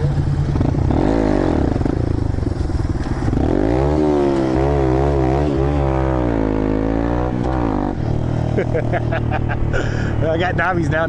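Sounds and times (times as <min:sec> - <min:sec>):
motorcycle engine revving: 0:00.0 - 0:11.0.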